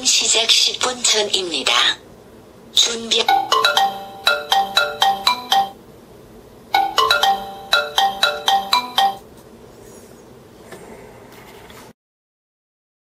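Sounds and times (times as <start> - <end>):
bell-like alarm ringtone: 3.3 - 5.8, 6.7 - 9.2.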